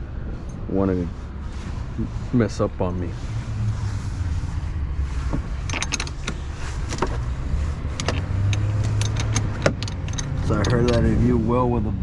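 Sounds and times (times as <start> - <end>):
hand tools clinking on battery terminals: 8.0 - 11.1.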